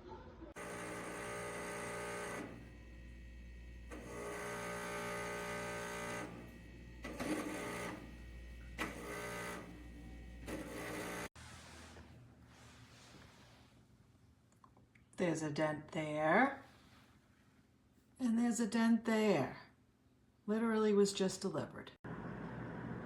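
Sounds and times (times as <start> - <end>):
water cooler buzzing hum: 0.6 - 11.3.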